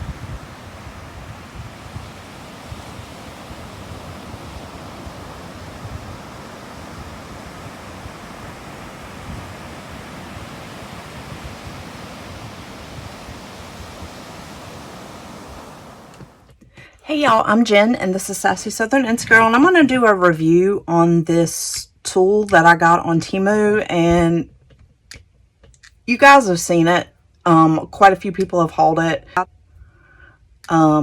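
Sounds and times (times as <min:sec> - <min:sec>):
steady rushing noise: 0:00.0 - 0:16.5.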